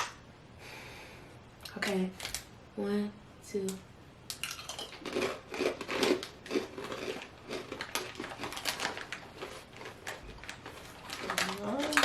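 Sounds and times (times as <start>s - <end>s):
chewing crispy snack: 4.4s - 12.0s.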